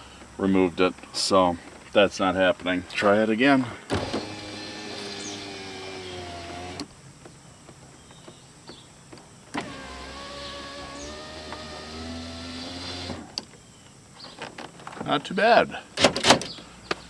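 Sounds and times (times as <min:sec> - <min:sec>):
window motor click: 0:03.9 - 0:06.9, 0:09.5 - 0:13.5
power window motor humming: 0:03.9 - 0:07.0, 0:09.6 - 0:13.4.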